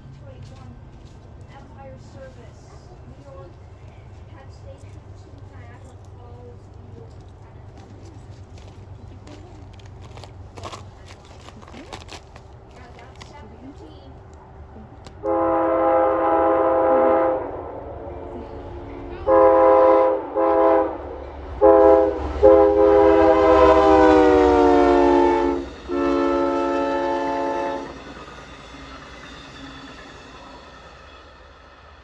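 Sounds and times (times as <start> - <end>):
train rumble: 0.0 - 32.0
locomotive air horn blasts: 15.2 - 18.5, 19.2 - 28.2.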